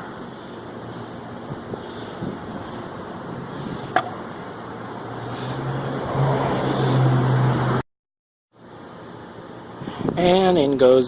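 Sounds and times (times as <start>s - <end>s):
motor vehicle humming: 0.0s - 7.8s.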